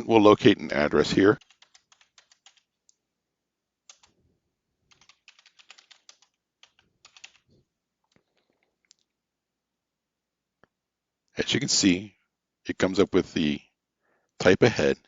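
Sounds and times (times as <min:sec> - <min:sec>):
typing on a keyboard: 0:01.3 - 0:03.0, 0:03.8 - 0:04.2, 0:04.9 - 0:07.5.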